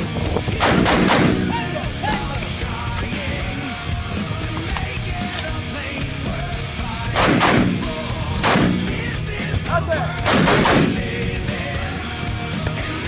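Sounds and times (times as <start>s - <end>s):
rock music: 0.0s - 13.0s
gunshots echoing: 0.6s - 2.4s, 7.1s - 9.5s, 10.2s - 11.2s.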